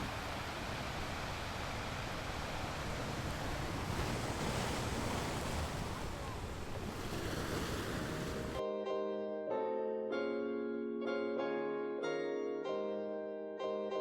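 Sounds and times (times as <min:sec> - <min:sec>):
sea waves surf: 0:00.0 - 0:08.6
wind rumbling on microphone: 0:00.0 - 0:08.6.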